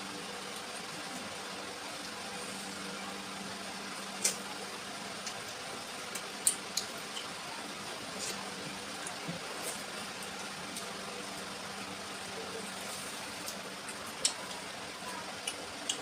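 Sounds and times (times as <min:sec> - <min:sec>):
chewing and lip-smacking: 0:13.4 - 0:14.7, 0:15.3 - 0:16.0.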